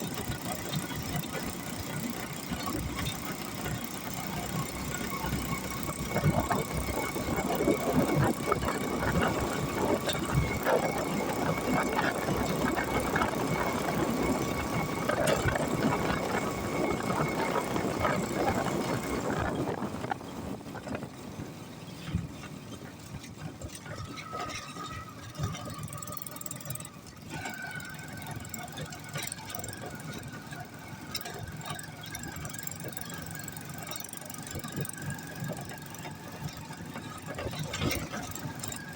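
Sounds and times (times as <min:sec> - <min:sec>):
auto-rickshaw engine rattling: 0:00.0 - 0:38.9.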